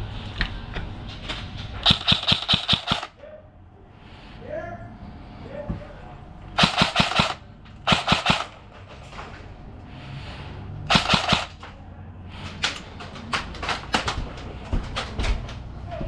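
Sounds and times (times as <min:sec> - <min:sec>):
airsoft guns firing: 0:01.8 - 0:03.2, 0:06.6 - 0:08.7, 0:10.9 - 0:11.6.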